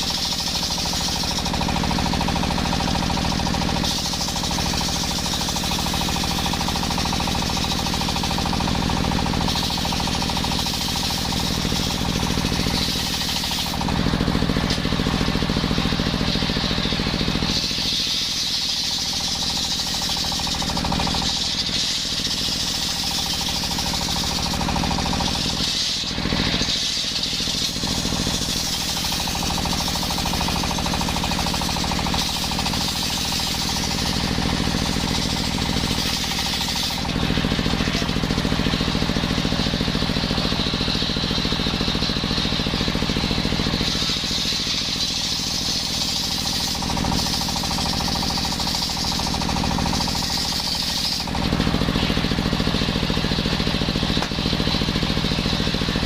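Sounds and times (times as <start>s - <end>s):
circular saw sawing wood: 0.0s - 56.0s.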